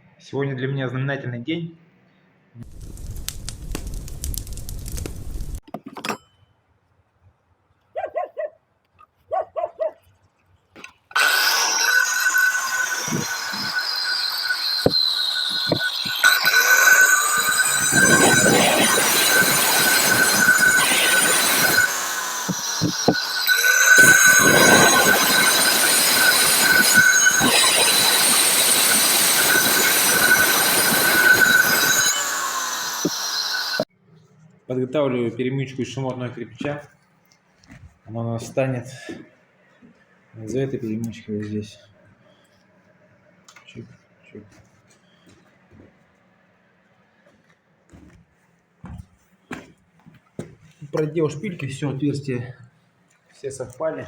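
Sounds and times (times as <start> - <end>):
hissing with high whine: 2.6 - 5.6, 11.1 - 33.9
dog barking: 7.9 - 8.6, 9.3 - 10.0
power tool grinding brick: 11.0 - 33.9.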